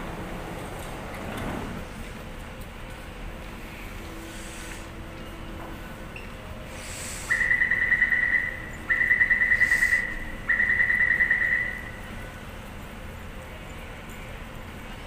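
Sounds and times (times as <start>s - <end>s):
low station hum: 0.0s - 15.0s
warbling high beeps: 7.3s - 11.9s.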